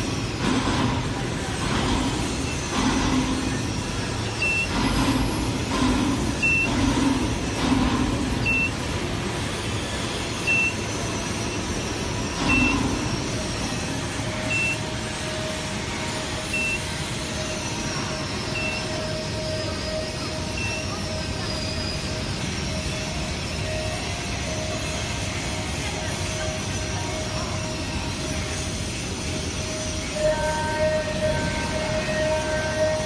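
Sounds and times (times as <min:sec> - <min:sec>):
machinery rumble: 0:00.0 - 0:33.0
short high beeps: 0:08.4 - 0:08.9, 0:10.4 - 0:11.6, 0:12.4 - 0:13.0, 0:14.4 - 0:14.9, 0:16.4 - 0:16.9, 0:18.4 - 0:19.7.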